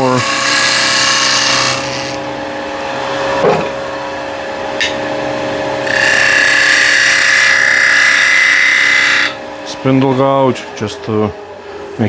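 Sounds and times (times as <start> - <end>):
turning tool cutting wood: 0.0 - 11.8
wood lathe humming: 0.0 - 12.0.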